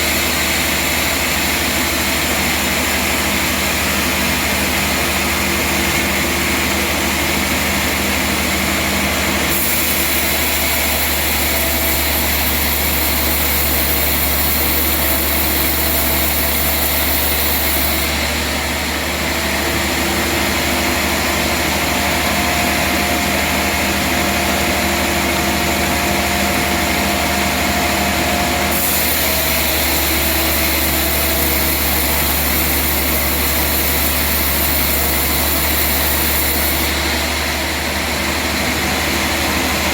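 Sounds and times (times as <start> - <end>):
band saw hiss: 28.7 - 37.0.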